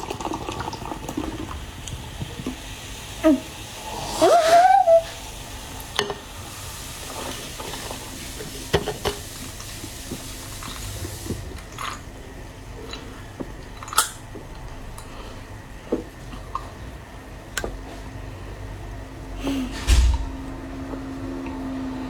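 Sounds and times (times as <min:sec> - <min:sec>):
liquid hiss: 0:00.0 - 0:13.2
person slurping juice: 0:03.2 - 0:05.0
small gulps: 0:10.2 - 0:17.2.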